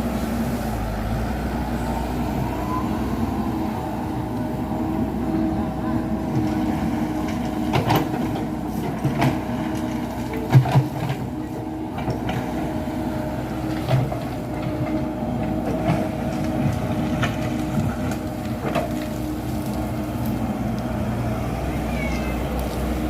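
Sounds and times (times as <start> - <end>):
excavator diesel engine running: 0.0 - 23.0
machine knocks and clanks: 7.2 - 11.3.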